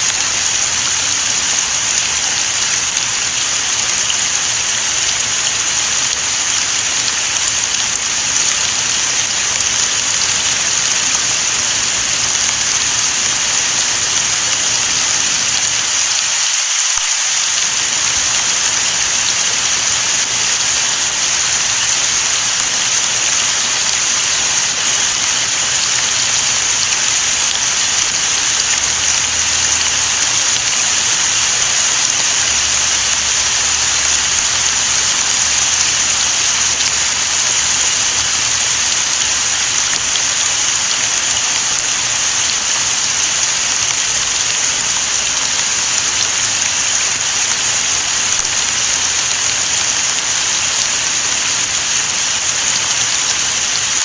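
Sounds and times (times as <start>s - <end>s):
steady rain hissing: 0.0s - 54.0s.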